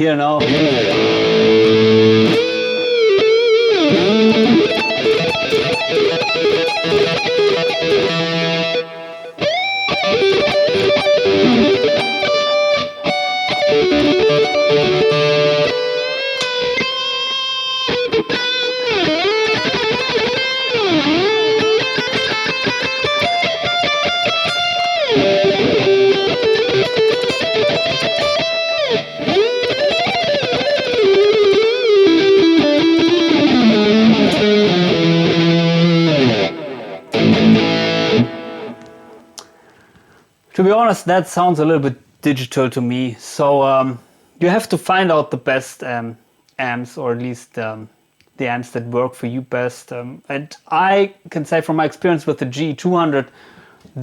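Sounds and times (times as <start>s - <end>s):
distorted electric guitar lead: 0.0s - 39.8s.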